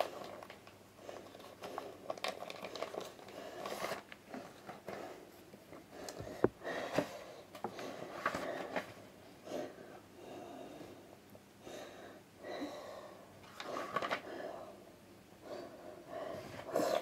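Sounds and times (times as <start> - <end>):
rustling and tapping of book: 5.7 - 9.0, 13.4 - 14.2.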